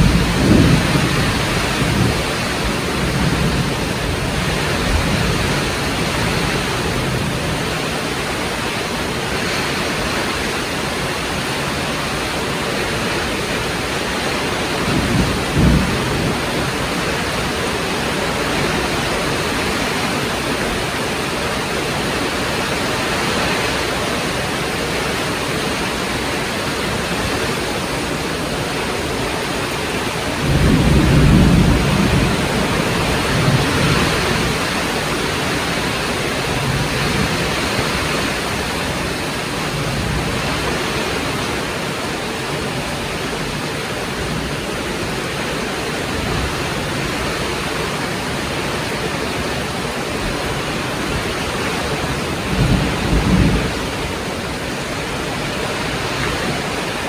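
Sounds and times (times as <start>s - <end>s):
thunder rumbling: 0.0s - 8.6s, 13.2s - 21.1s, 29.0s - 41.3s, 50.3s - 56.8s
heavy rain falling: 0.0s - 57.0s.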